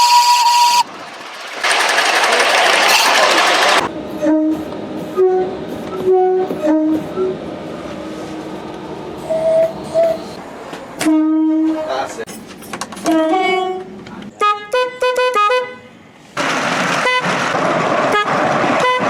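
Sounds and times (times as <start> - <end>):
train two-tone horn blasts: 0.0 - 0.9, 2.9 - 7.4, 11.0 - 12.1, 13.1 - 16.0, 17.0 - 17.5, 18.1 - 19.0
train running noise: 0.0 - 14.4, 16.0 - 19.0.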